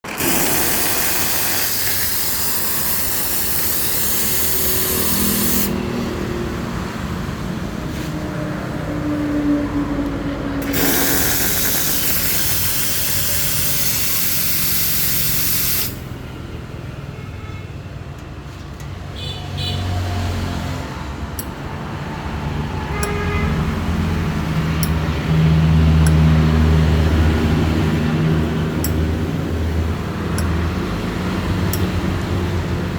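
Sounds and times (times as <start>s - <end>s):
steam wand hissing: 0.1s - 5.8s, 10.6s - 16.1s.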